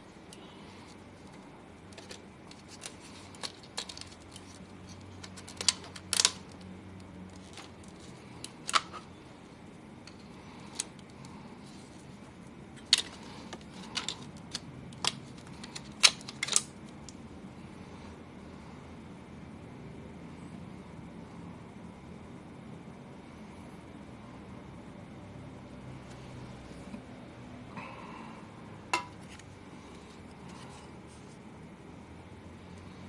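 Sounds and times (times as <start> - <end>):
small parts and tools clicking: 0.3 - 9.1, 12.8 - 17.2.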